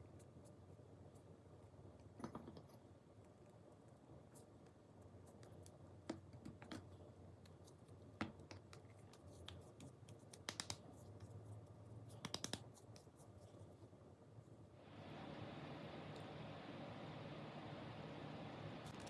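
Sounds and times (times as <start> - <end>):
air conditioner hum: 0.0 - 19.0
faint clicks and taps: 4.3 - 11.4, 12.1 - 13.6.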